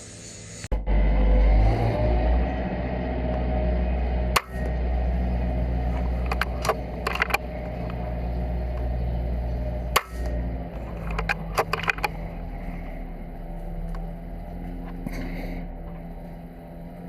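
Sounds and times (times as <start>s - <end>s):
low mechanical engine hum: 0.0s - 17.0s
sharp clicks: 5.8s - 8.1s, 9.7s - 12.3s.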